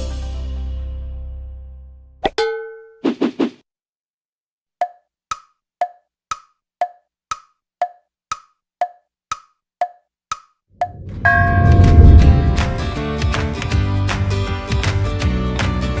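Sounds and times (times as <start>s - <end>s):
background music: 0.0s - 1.9s, 11.3s - 16.0s
wood-block tick-tock: 4.8s - 11.0s.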